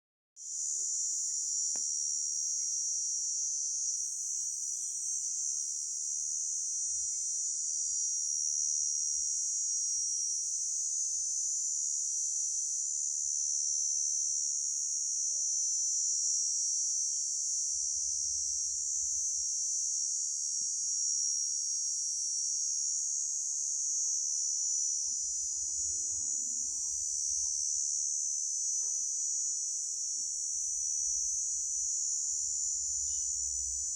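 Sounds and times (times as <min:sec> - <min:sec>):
grasshopper stridulating: 0:22.1 - 0:33.9.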